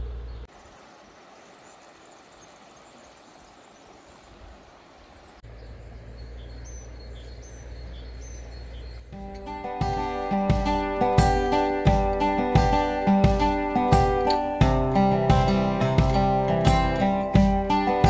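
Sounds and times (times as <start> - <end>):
faint steady hiss: 0.0 - 5.4
bird chirping: 0.0 - 9.2.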